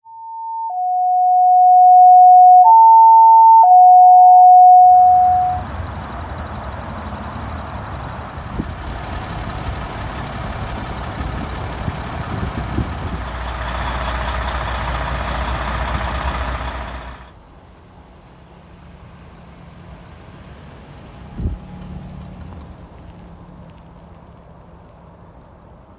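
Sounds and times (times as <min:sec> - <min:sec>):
alternating two-tone electronic tones: 0:00.0 - 0:05.6
heavy vehicle engine rumble: 0:05.0 - 0:25.9
steady rushing noise: 0:07.9 - 0:13.3.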